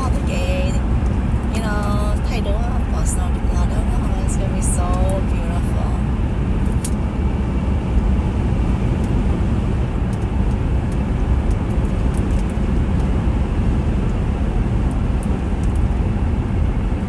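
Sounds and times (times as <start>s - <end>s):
car cabin road and engine noise: 0.0s - 17.0s.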